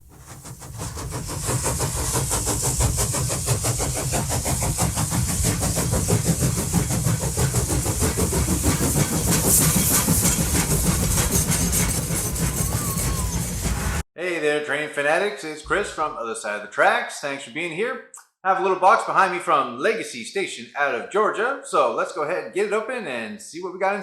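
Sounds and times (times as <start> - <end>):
train running: 0.0 - 14.0.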